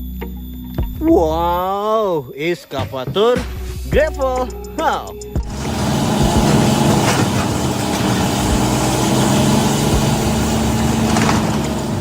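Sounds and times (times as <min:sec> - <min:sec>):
heavy vehicle engine idling: 0:05.4 - 0:12.0.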